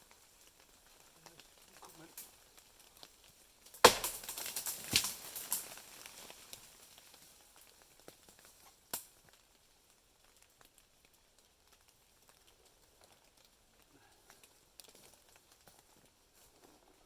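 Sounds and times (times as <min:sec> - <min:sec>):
faint crackles: 0:00.0 - 0:17.0
sharp snap: 0:03.9 - 0:05.1.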